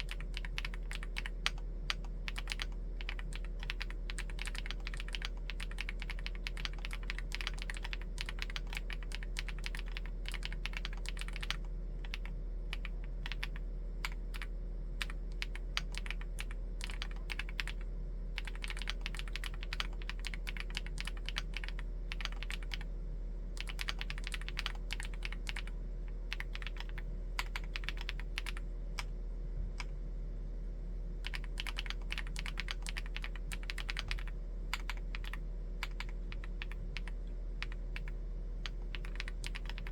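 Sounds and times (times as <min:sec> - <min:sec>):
typing on mechanical keyboard: 0:00.0 - 0:17.8, 0:18.4 - 0:22.9, 0:23.6 - 0:25.7, 0:26.3 - 0:28.6, 0:31.2 - 0:39.9.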